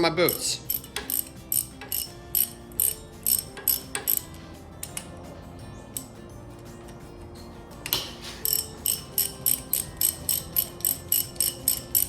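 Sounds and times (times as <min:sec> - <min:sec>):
ratchet wrench clicking: 0:00.3 - 0:05.2, 0:05.9 - 0:06.2, 0:07.8 - 0:12.0.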